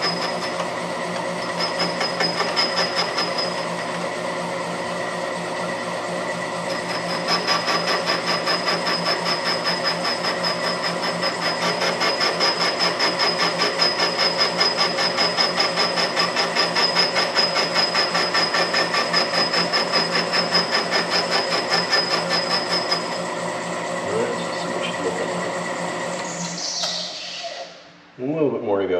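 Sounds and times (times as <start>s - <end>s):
cutting tool whine: 0.0s - 28.1s.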